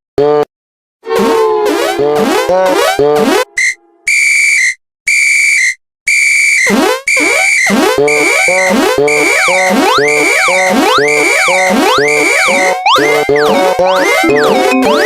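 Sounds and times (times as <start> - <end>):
cartoon music with springy notes: 1.1 - 4.2, 6.6 - 15.0
whistle-like electronic toots: 1.1 - 15.0.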